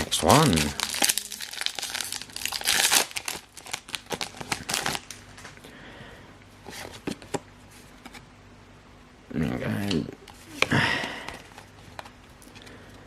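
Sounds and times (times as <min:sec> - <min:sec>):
foil wrapper crinkling: 0:00.0 - 0:05.6.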